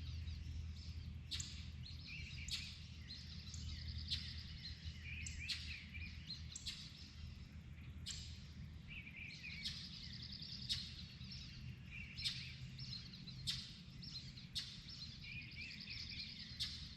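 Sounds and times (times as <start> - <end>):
faint low rumble: 0.0 - 9.2
songbirds trilling and warbling: 0.0 - 16.9.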